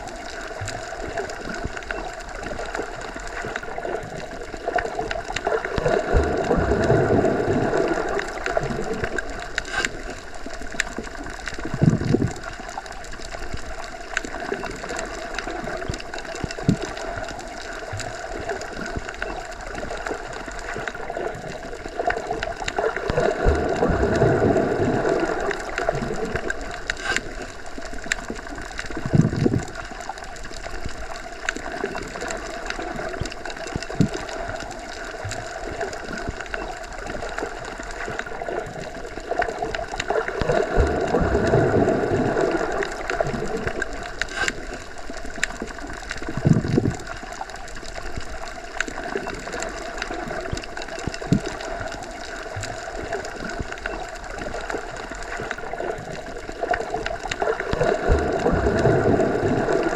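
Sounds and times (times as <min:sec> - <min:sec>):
underwater water wash: 0:00.0 - 0:59.9
small clicks: 0:08.0 - 0:23.4, 0:25.2 - 0:40.6.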